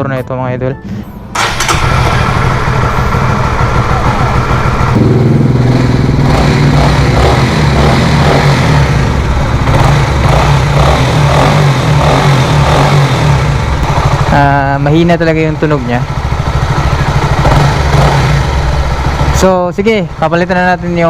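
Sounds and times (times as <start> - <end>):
motorcycle engine running: 1.4 - 21.0
steady high tone: 2.1 - 9.6.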